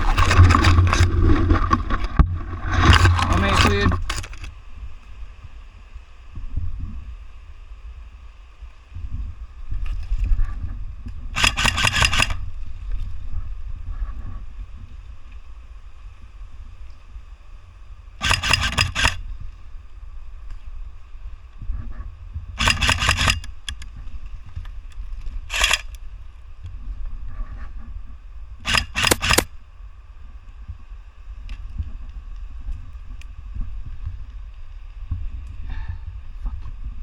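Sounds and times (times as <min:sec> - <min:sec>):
wind rumble on microphone: 0:00.0 - 0:28.7, 0:29.4 - 0:37.0
airsoft guns firing bursts: 0:11.4 - 0:12.4, 0:18.2 - 0:19.2, 0:22.6 - 0:23.8, 0:25.5 - 0:26.0, 0:28.7 - 0:29.5.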